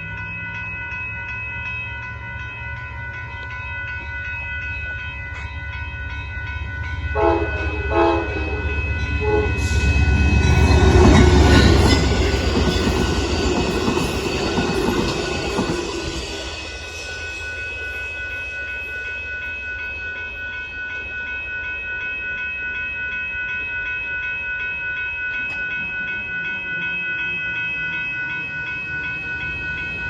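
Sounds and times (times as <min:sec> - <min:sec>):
train rumble and clatter passing: 0:00.0 - 0:21.1, 0:25.4 - 0:30.0
crossing bell ringing: 0:00.0 - 0:30.0
locomotive horn blasts: 0:07.1 - 0:09.9.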